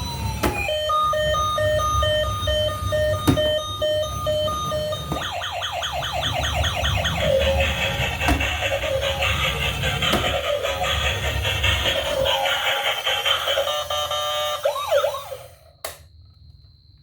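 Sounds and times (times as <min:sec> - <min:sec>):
toy siren beeping: 0:00.0 - 0:15.7
electronic falling chirps: 0:00.6 - 0:09.1.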